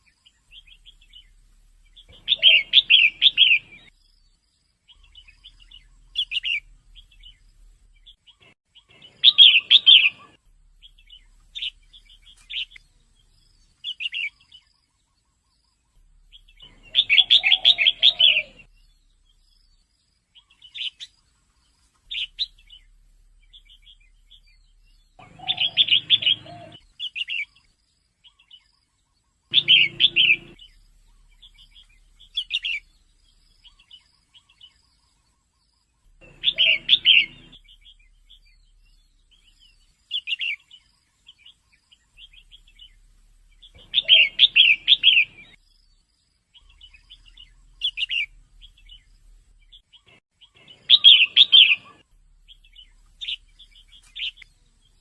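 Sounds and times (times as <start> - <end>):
bird single chirps: 0.0 - 55.0
bird chattering calls: 2.0 - 3.9, 16.6 - 18.7, 25.2 - 27.5, 29.5 - 32.9, 36.2 - 38.5, 43.6 - 45.6, 49.9 - 52.0.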